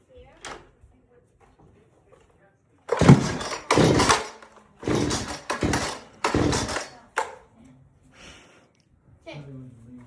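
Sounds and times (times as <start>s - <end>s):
chainsaw starter cord pulls: 2.9s - 7.4s.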